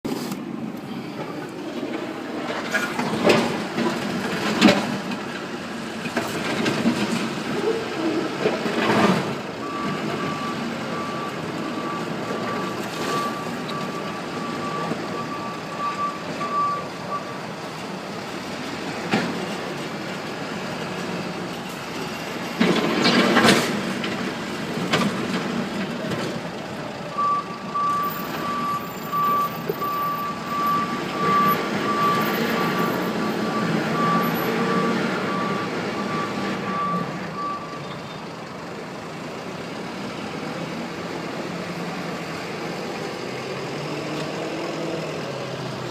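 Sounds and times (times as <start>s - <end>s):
backhoe running under load: 0.1s - 45.9s
reversing alarm beeps: 9.6s - 17.4s, 27.1s - 38.2s.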